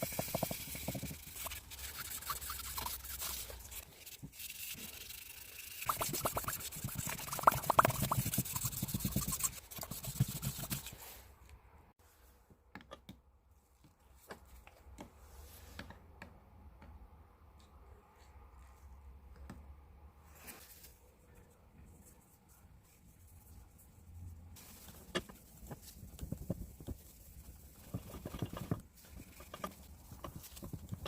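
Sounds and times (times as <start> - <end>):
rubbing and scraping metal: 0.0 - 11.0.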